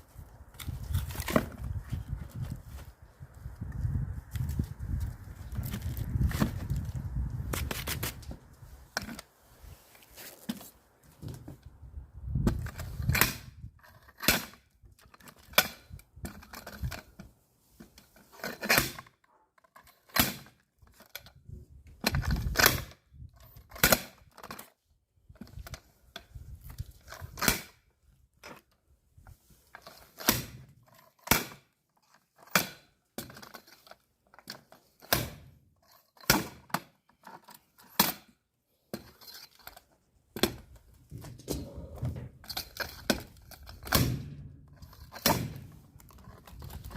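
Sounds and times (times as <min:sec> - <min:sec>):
axe splitting firewood: 0:00.5 - 0:01.8, 0:05.6 - 0:08.4, 0:12.4 - 0:16.9, 0:17.8 - 0:19.4, 0:20.0 - 0:20.9, 0:26.7 - 0:27.8, 0:30.0 - 0:46.9.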